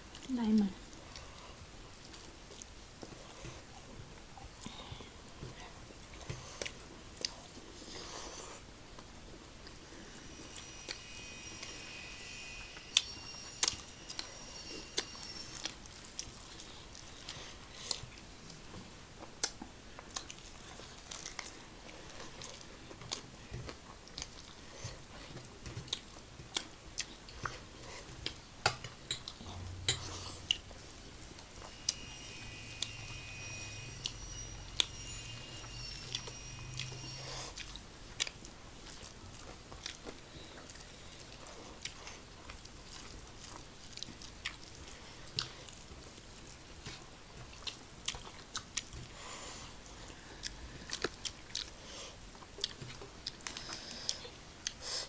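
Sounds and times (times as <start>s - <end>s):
faint high whistling tone: 9.6s - 18.8s, 29.4s - 39.1s.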